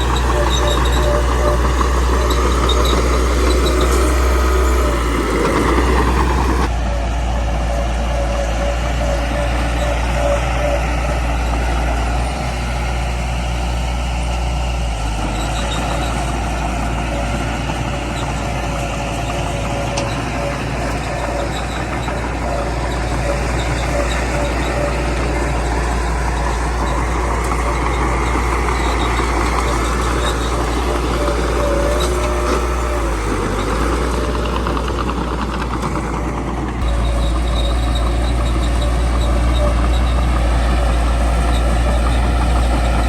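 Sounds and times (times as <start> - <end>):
bulldozer engine droning: 0.0 - 43.0.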